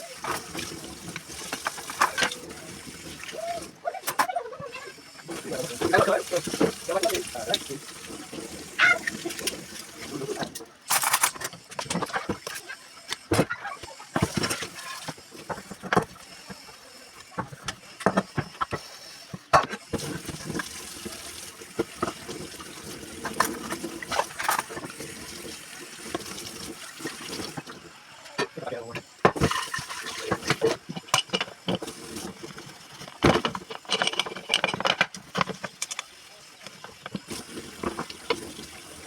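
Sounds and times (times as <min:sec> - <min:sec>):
tap water running into sink: 0:00.0 - 0:03.8, 0:05.0 - 0:10.7, 0:14.2 - 0:27.9, 0:28.6 - 0:39.0
knocks and clatter of dishes: 0:29.2 - 0:36.0.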